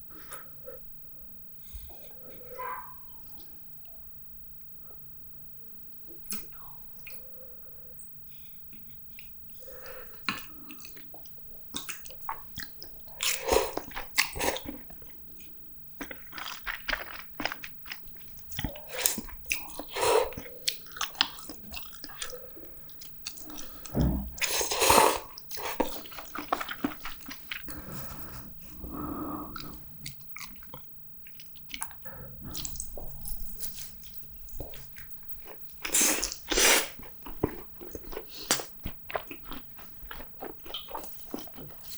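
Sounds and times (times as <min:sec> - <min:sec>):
wet mouth clicks: 0:06.2 - 0:07.2, 0:10.2 - 0:17.7, 0:18.4 - 0:41.9
person chewing food: 0:08.3 - 0:41.9.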